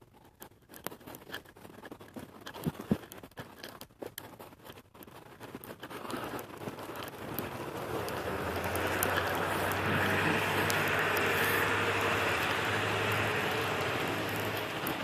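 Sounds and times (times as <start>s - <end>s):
vehicle engine hum passing: 7.1s - 15.0s
tyre hiss on wet road: 7.4s - 15.0s.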